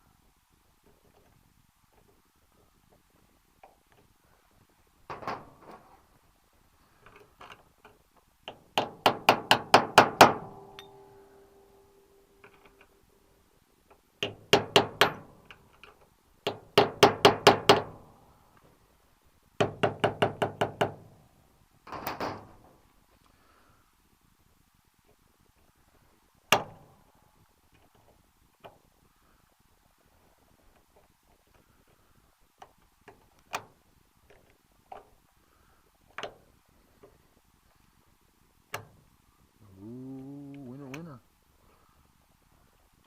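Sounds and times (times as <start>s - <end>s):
metallic ringing tone: 10.6s - 12.8s.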